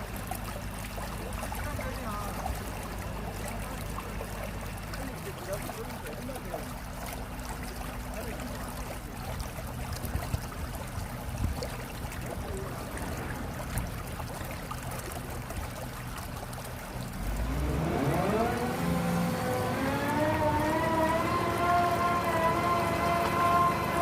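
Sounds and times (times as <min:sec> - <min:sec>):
excavator diesel engine running: 0:17.3 - 0:24.0.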